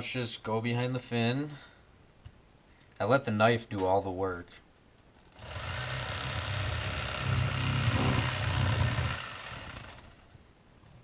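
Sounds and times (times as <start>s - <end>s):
electric fillet knife buzzing: 5.4s - 10.2s.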